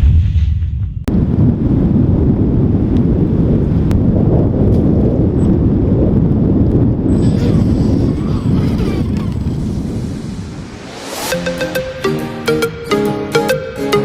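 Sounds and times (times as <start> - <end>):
wind buffeting microphone: 1.1 - 11.6.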